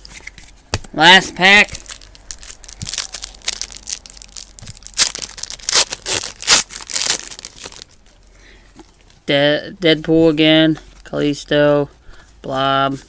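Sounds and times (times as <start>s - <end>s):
wrapper tearing and crinkling: 1.5s - 8.0s.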